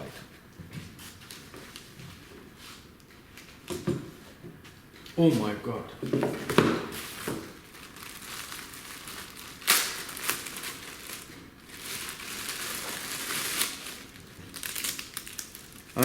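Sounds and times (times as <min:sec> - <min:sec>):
packaging crinkling: 0:06.9 - 0:16.0.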